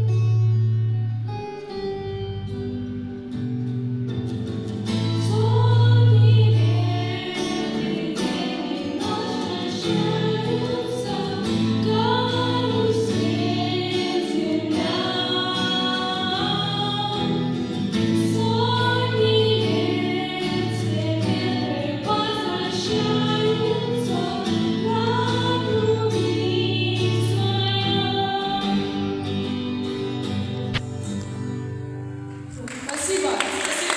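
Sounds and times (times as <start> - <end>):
voices singing a melody: 5.2 - 29.2.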